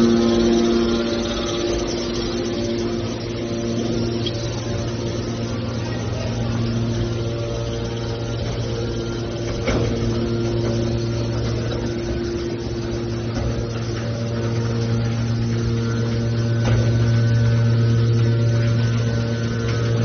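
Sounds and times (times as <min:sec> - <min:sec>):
baler machine hum: 0:00.0 - 0:20.0.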